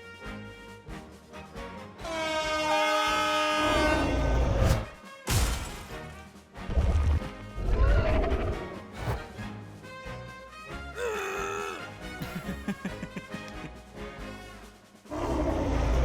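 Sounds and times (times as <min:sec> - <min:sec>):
cartoon crash: 0:05.3 - 0:05.9.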